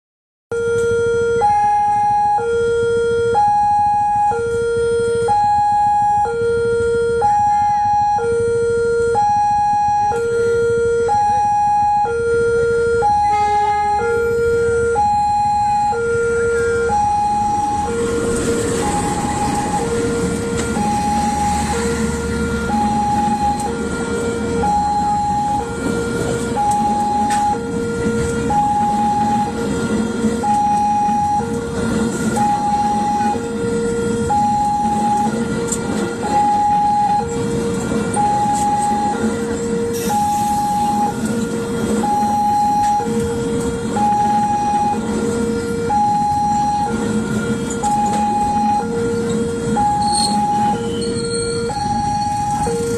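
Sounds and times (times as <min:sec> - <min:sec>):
level-crossing two-tone alarm: 0:00.5 - 0:52.9
passing train rumble: 0:15.7 - 0:52.9.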